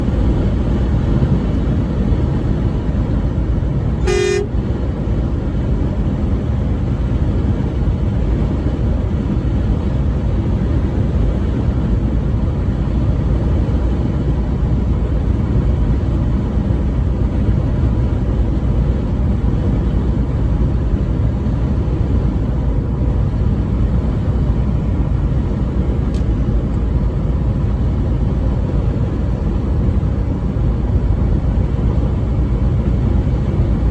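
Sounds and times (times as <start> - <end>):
truck rumbling on highway: 0.0 - 33.9
truck horn blast: 4.0 - 4.7.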